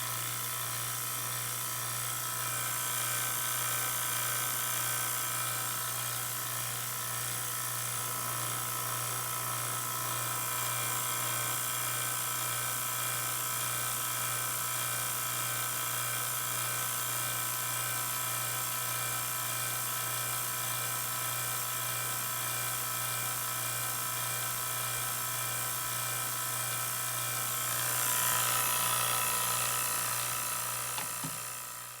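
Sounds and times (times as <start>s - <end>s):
vacuum pump humming and whining: 0.0s - 32.0s.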